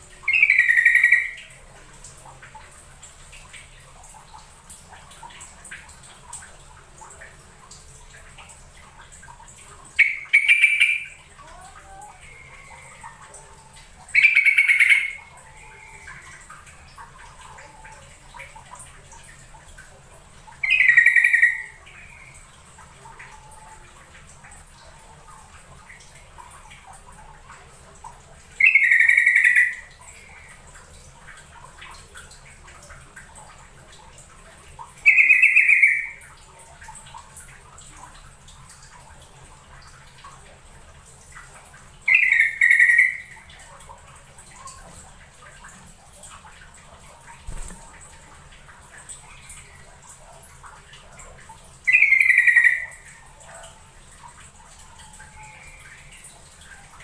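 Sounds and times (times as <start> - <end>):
bird singing bubbly phrases: 0.0 - 1.7, 9.6 - 19.5, 20.4 - 26.6, 28.5 - 30.6, 35.0 - 36.3, 42.0 - 43.8, 51.8 - 54.0, 54.8 - 56.9.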